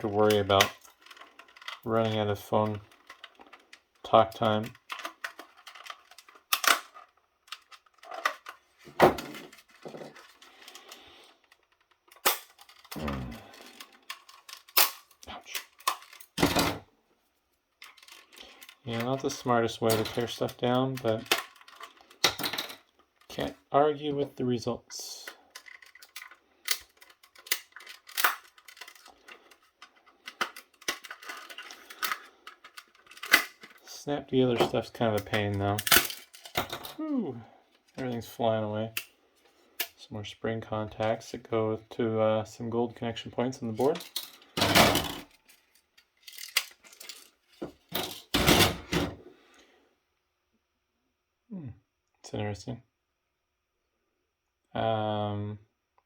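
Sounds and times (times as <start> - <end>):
plastic rattles: 0.0 - 16.8, 17.8 - 23.5, 25.5 - 33.9, 34.6 - 37.0, 43.7 - 49.2
plastic case cracking and clicking: 4.6 - 8.6
plastic housing cracking apart: 4.6 - 10.5, 11.5 - 16.6, 20.9 - 22.8, 25.5 - 33.8.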